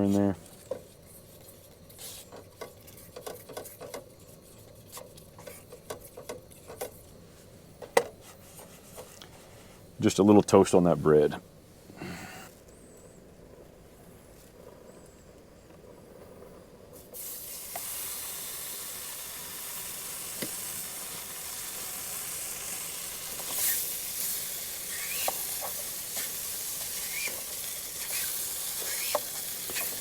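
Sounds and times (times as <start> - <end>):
meat sizzling in a pan: 17.0 - 30.0
pops and crackles: 24.8 - 30.0.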